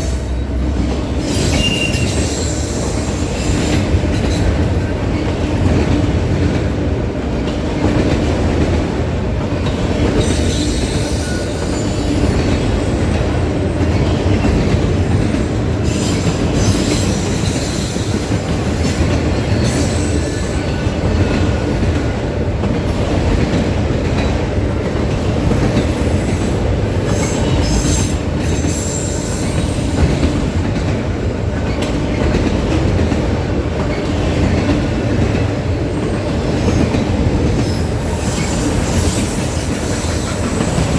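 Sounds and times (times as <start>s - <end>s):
train wheels rumbling on rails: 0.0s - 40.9s
high-pitched wheel squeals: 1.3s - 2.9s, 36.7s - 40.9s.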